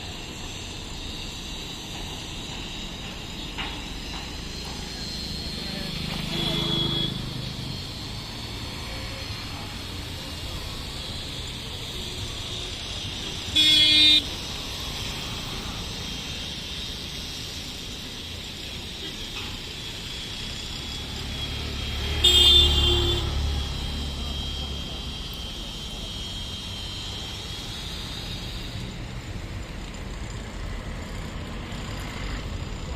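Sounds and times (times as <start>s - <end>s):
background traffic noise: 0.0s - 32.9s
vehicle horn toots: 6.2s - 7.3s, 13.6s - 14.2s, 22.1s - 23.4s.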